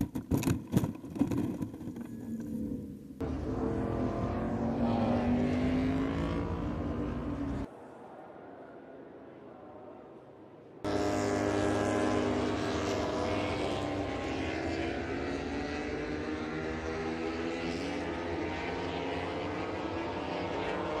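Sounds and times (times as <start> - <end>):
engine running: 1.1 - 7.7, 10.9 - 21.0.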